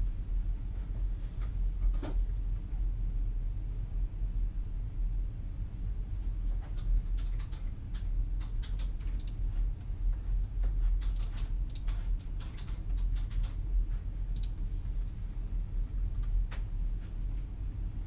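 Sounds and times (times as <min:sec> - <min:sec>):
low hum of room tone: 0:00.0 - 0:18.0
computer keyboard typing: 0:06.7 - 0:09.4, 0:10.2 - 0:13.6.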